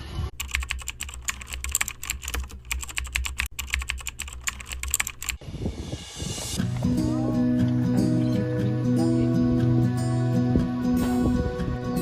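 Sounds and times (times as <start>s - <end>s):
rapid irregular clicking: 0.3s - 5.4s.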